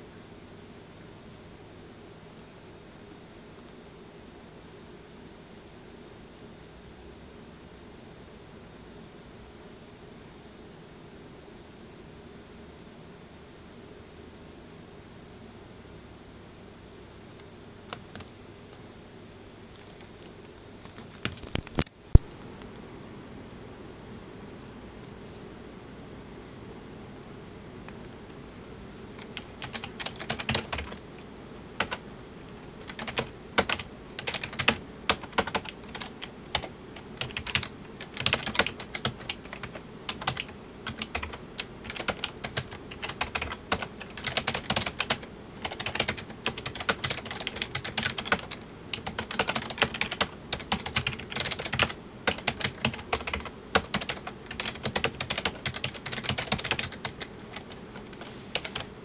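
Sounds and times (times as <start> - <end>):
faint steady hum: 0.0 - 59.0
typing on a keyboard: 17.9 - 18.3, 20.8 - 22.3, 29.2 - 31.0, 31.8 - 32.0, 32.8 - 58.9.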